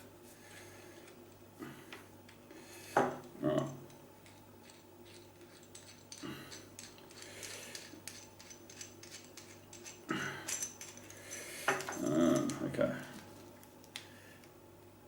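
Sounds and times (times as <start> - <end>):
metallic clicks and scrapes: 4.2 - 12.6.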